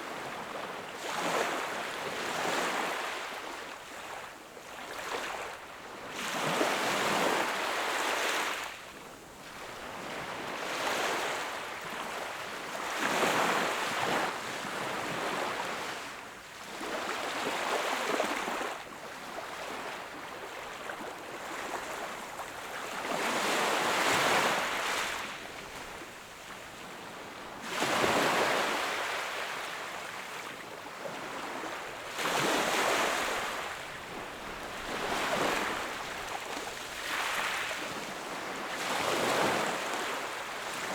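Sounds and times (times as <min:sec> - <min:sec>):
sea waves breaking on beach: 0:31.2 - 0:40.9.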